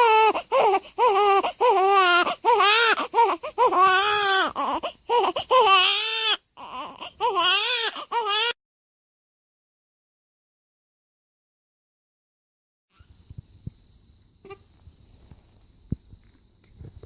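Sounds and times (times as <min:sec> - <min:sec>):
newborn baby crying: 0:00.0 - 0:08.6.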